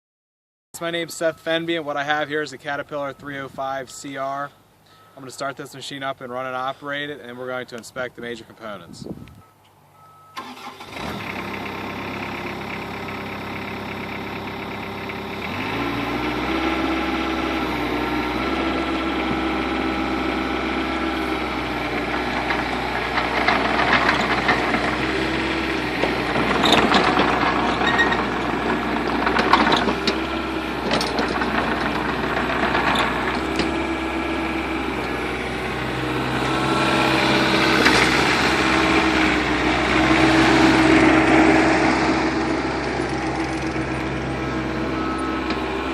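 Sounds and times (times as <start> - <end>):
diesel engine running: 10.2 - 45.9.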